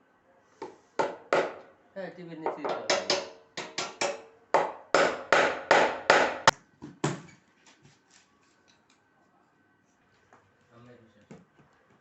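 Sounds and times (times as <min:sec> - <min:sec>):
hammer strikes with ring: 0:02.5 - 0:06.5.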